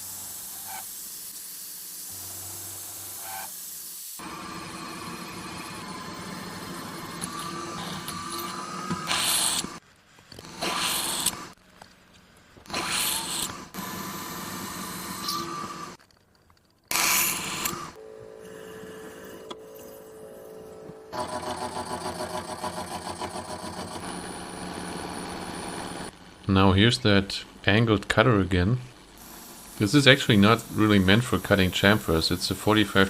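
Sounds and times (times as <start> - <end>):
milling machine cutting steel: 4.2 - 9.8
steady machine whine: 4.2 - 9.8, 16.9 - 33.0.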